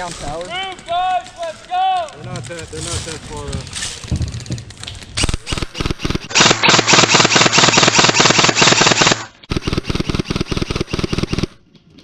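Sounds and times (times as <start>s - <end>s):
airsoft gun firing full-auto: 5.5s - 11.5s.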